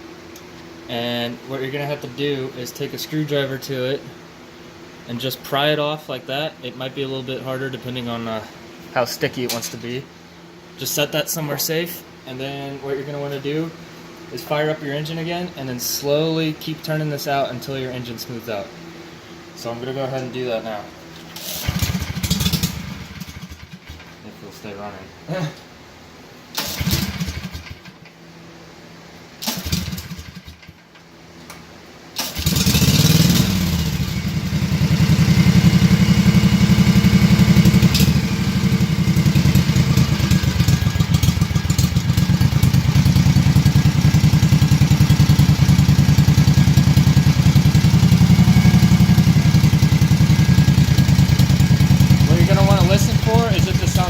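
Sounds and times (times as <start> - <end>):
mower engine idling: 21.2 - 24.2, 26.6 - 28.1, 29.4 - 31.0, 32.2 - 54.0
mower engine starting attempts: 21.3 - 24.2, 26.5 - 28.1, 29.4 - 31.0, 32.2 - 54.0.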